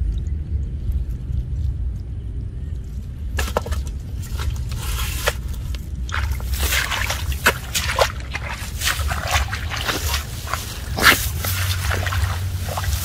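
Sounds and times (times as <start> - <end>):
steady low rumble: 0.0 - 13.0
splashing in muddy water: 3.4 - 13.0.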